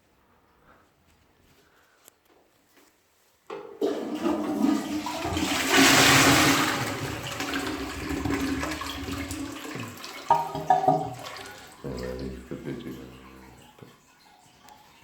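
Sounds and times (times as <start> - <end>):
toilet flushing: 3.6 - 15.0.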